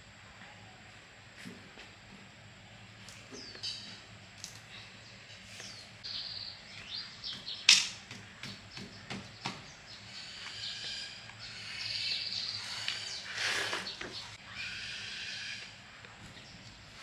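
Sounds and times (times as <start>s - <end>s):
small birds chirping: 3.0s - 4.0s, 4.6s - 17.0s.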